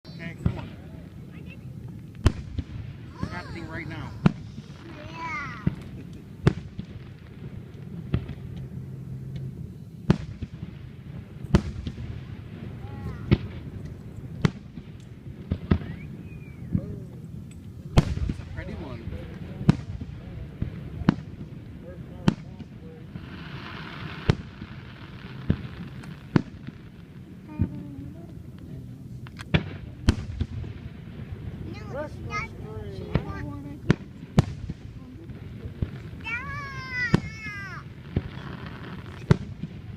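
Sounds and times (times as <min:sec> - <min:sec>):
fireworks booming: 0:00.1 - 0:39.9
low background rumble: 0:00.1 - 0:39.9.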